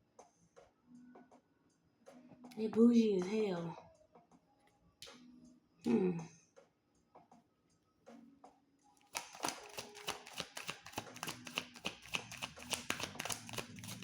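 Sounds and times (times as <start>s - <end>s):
cards being shuffled: 9.1s - 14.0s.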